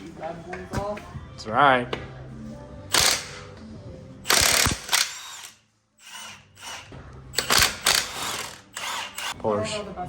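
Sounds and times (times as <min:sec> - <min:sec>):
impact wrench bursts: 0:02.9 - 0:03.4, 0:04.3 - 0:09.4.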